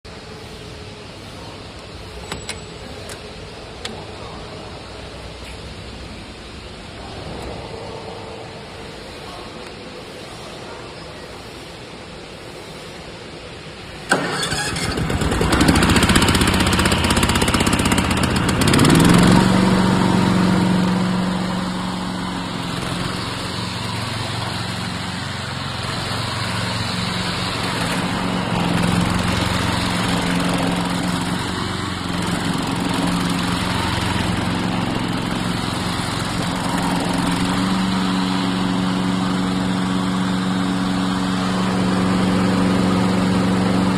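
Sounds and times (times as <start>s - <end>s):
lawn mower engine starting and running: 13.0s - 43.9s.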